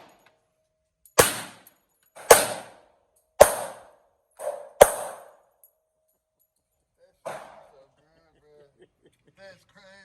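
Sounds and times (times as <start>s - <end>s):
pistol shots with ringing decay: 1.2s - 5.4s.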